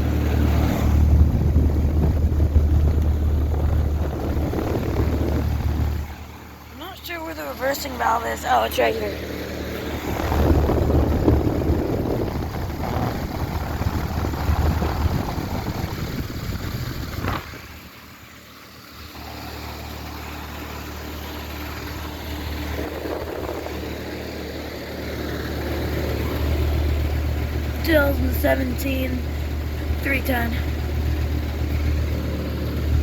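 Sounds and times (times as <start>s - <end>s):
condenser fan rushing: 0.0s - 17.8s.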